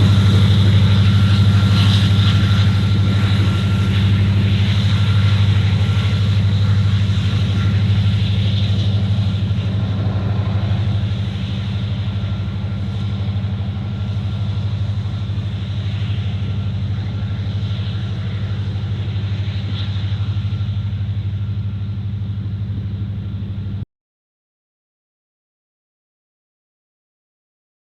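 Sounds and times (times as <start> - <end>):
diesel locomotive engine under load: 0.0 - 23.8.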